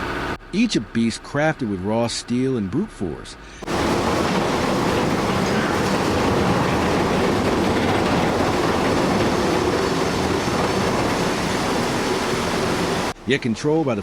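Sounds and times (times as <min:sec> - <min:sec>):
machinery rattling and clanking: 0:03.6 - 0:13.2
heavy machinery rumbling: 0:03.6 - 0:13.4.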